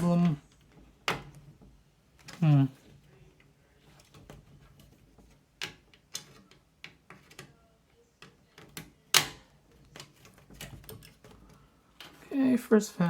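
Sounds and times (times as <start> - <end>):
clicks and knocks of computer parts: 3.9 - 7.6, 8.2 - 12.2.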